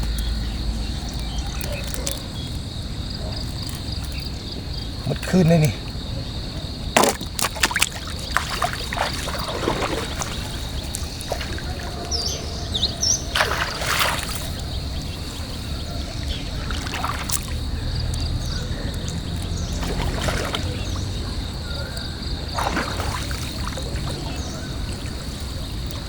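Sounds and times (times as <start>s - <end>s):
water splashing and dripping: 0.0s - 2.6s, 6.9s - 26.0s
bird chirps: 9.3s - 22.6s.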